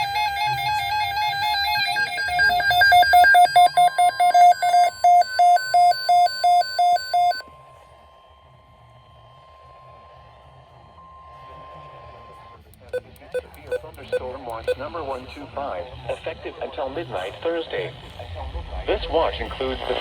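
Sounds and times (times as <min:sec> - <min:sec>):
weather radio alert beeps: 0:01.3 - 0:07.4, 0:12.9 - 0:14.9
radio hiss: 0:11.4 - 0:20.0.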